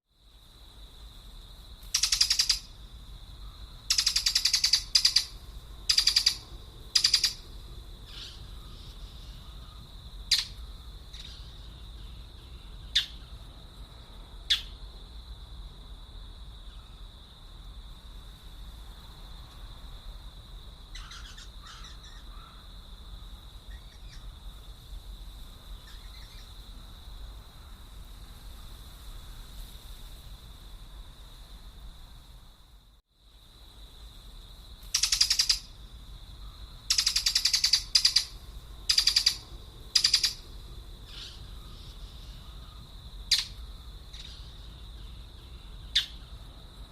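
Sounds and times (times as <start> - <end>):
harsh rasping bird calls: 1.9 - 2.7, 3.9 - 7.4, 8.1 - 13.3, 14.5 - 14.8, 20.9 - 22.6, 34.9 - 35.7, 36.9 - 40.4, 41.1 - 46.3
sharp bird chirps: 1.9 - 2.7, 3.9 - 6.4, 7.0 - 7.4, 8.1 - 13.4, 14.5 - 14.8, 20.9 - 22.5, 34.9 - 35.7, 36.9 - 39.4, 40.0 - 40.4, 42.6 - 46.3.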